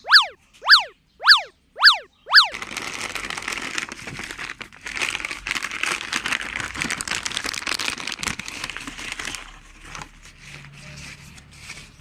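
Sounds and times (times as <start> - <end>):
crinkling and rustling: 2.5 - 12.0.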